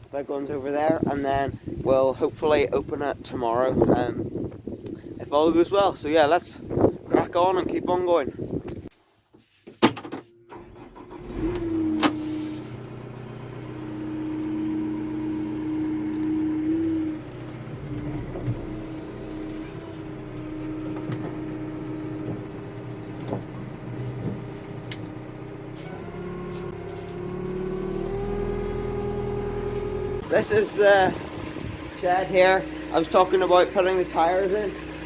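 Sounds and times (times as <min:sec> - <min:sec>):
diesel engine running: 0:10.5 - 0:35.0.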